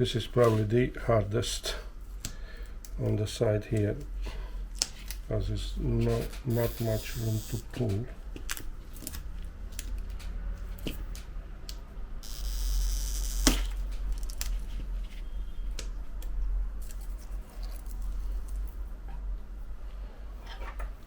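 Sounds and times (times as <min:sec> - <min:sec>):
adhesive strip hiss and snap: 0:13.2 - 0:14.5.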